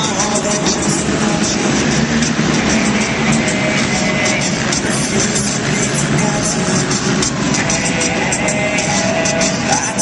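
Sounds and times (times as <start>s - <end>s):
monster truck engines running: 0.0s - 10.0s
music: 0.0s - 10.0s.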